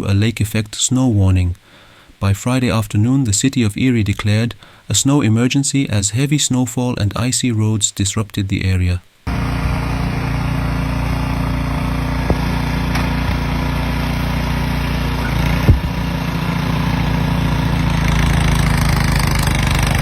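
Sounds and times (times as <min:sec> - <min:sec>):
engine running steadily: 0:09.3 - 0:20.0
sharp knock: 0:15.6 - 0:16.0.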